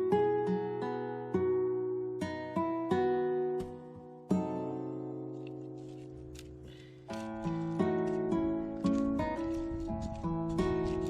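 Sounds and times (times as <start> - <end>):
plucked acoustic guitar: 0.0 - 11.0.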